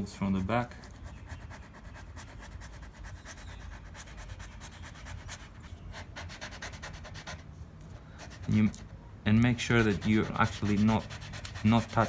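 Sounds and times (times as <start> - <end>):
squeegee rubbing on glass: 9.6 - 12.0.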